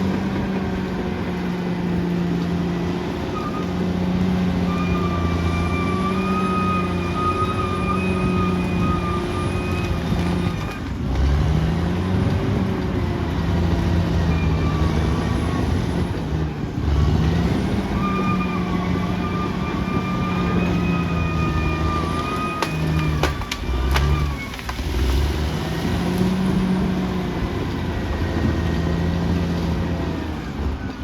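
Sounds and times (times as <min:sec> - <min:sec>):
bulldozer diesel engine under load: 0:00.0 - 0:31.0.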